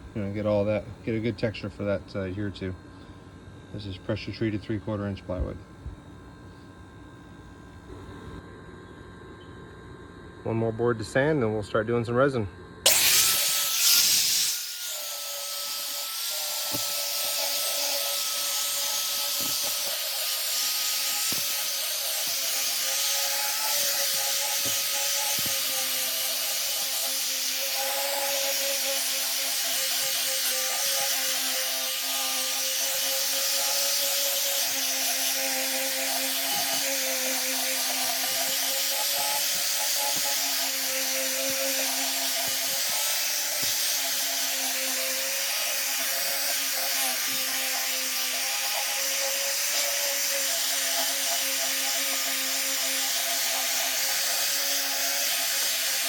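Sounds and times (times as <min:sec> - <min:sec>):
electric sander on plywood: 0:12.9 - 0:56.0.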